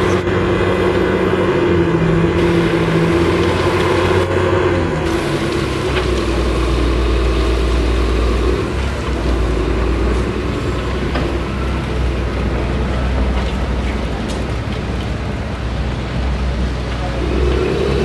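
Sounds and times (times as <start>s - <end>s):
bulldozer diesel engine running: 0.0s - 18.0s.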